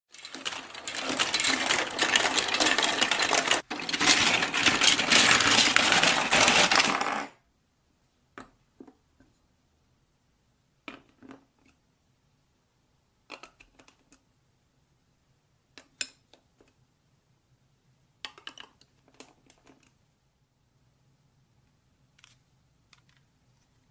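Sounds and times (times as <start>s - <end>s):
marbles rattling on plastic track: 0.1s - 7.4s.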